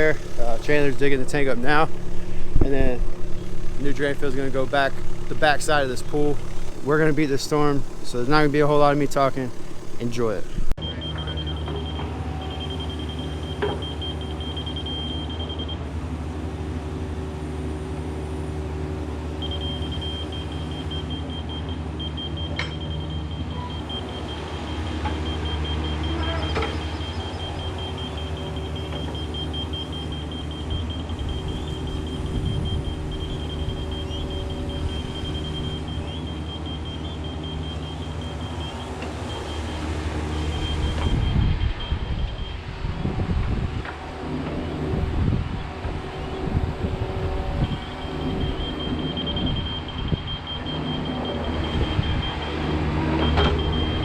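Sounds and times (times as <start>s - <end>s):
high-pitched beeping alarm: 0.0s - 15.8s, 19.4s - 54.0s
diesel engine running: 0.0s - 54.0s.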